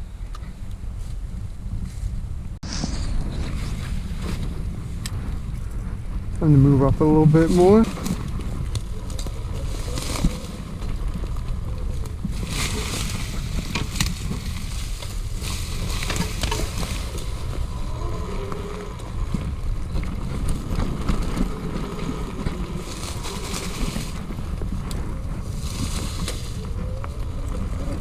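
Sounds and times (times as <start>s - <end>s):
wind buffeting microphone: 0.0s - 28.0s
rustling and crackling: 0.3s - 28.0s.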